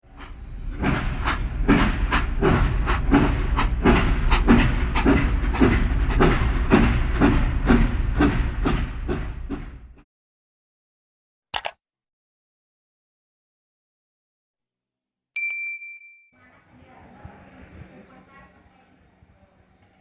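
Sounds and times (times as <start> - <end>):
steady low train rumble: 0.0 - 10.0
train wheels clattering over rail joints: 0.0 - 10.0.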